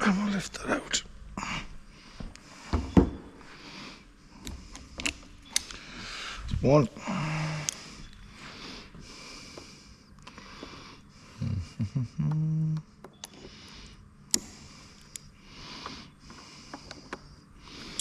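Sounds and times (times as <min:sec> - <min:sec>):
person breathing hard through nose: 0:01.4 - 0:05.0, 0:05.7 - 0:11.9, 0:13.3 - 0:18.0
person grunting with effort: 0:11.4 - 0:12.8.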